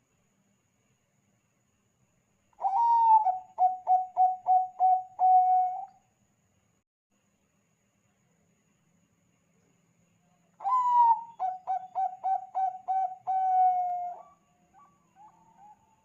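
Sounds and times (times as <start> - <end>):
dove cooing: 2.6 - 5.9, 10.6 - 16.0.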